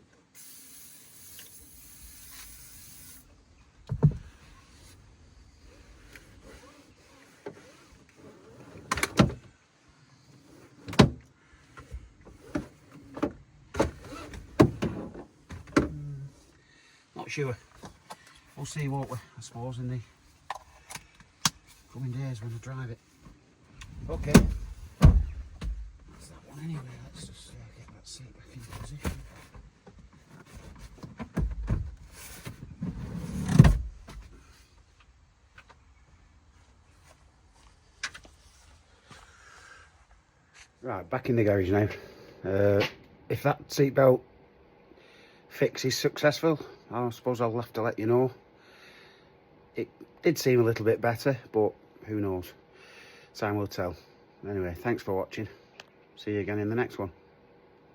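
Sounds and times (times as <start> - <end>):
seatbelt reel winding: 0.4 - 3.2
car seat clicks and rattles: 8.8 - 9.5, 12.3 - 16.0, 23.8 - 26.0, 30.8 - 34.4
heavy thump: 24.1 - 26.0.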